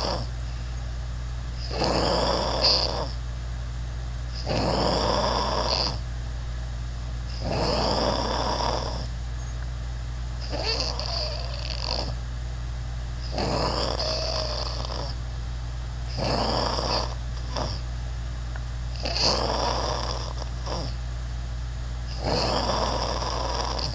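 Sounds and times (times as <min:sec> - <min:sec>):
person snoring: 0:00.0 - 0:00.3, 0:01.6 - 0:03.2, 0:04.4 - 0:06.0, 0:07.3 - 0:09.1, 0:10.4 - 0:12.2, 0:13.2 - 0:15.2, 0:16.1 - 0:17.8, 0:19.0 - 0:21.0, 0:22.1 - 0:23.9
steady low hum: 0:00.0 - 0:23.9.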